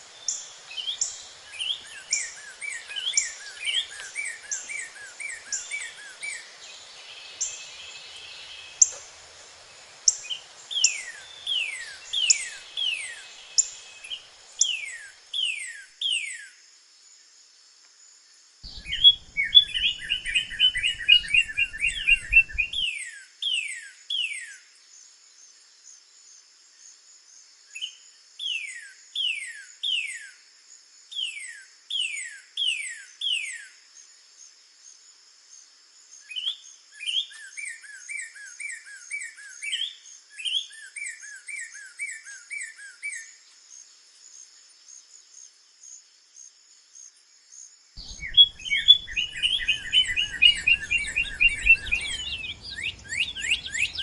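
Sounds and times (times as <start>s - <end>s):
steady high hiss: 0.0s - 16.0s, 17.1s - 22.8s, 43.6s - 54.0s
bird singing whistles and trills: 0.1s - 9.0s, 10.0s - 16.6s, 18.6s - 24.7s, 27.7s - 30.4s, 31.1s - 33.8s, 36.2s - 43.9s, 48.0s - 54.0s
faint high bird chips: 48.0s - 54.0s.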